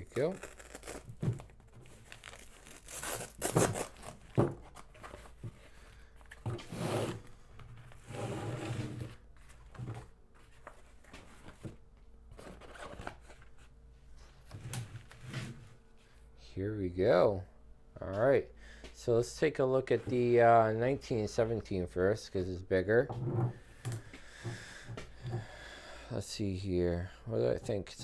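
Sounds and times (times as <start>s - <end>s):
velcro tearing: 0.0s - 1.2s, 1.9s - 4.2s
packaging crinkling and rustling: 0.0s - 5.4s.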